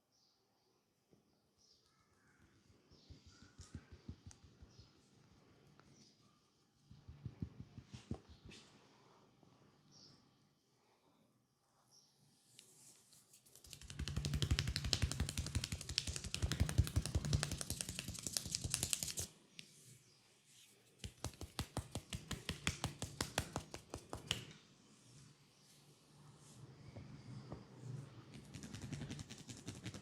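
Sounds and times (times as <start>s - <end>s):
hands clicking and tapping on head: 3.1s - 4.8s, 6.9s - 8.3s, 13.5s - 19.3s, 21.0s - 24.6s.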